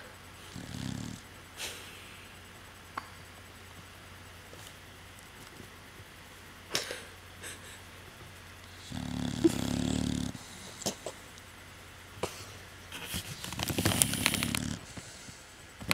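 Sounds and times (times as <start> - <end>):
dog snoring: 0.4 - 1.3, 8.7 - 10.8, 13.5 - 15.2.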